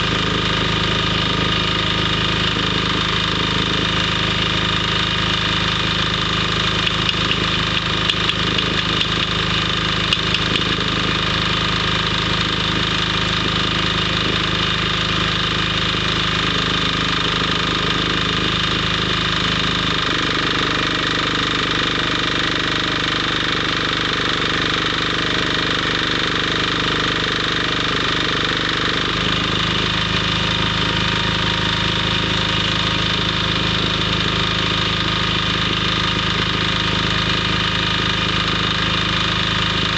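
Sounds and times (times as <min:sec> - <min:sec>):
welding machine humming: 0:00.0 - 0:39.9.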